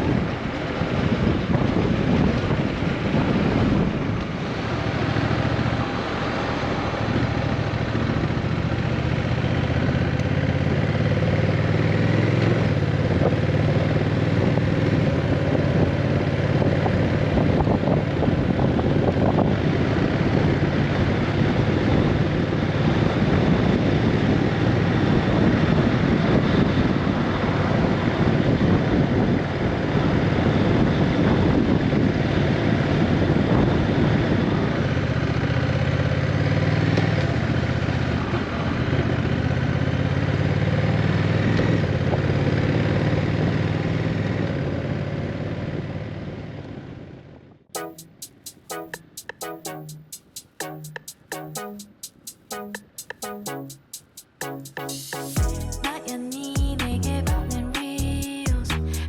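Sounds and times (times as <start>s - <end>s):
wind rushing over microphone: 0.0s - 6.0s, 12.6s - 35.0s
motorcycle engine running: 0.0s - 26.0s.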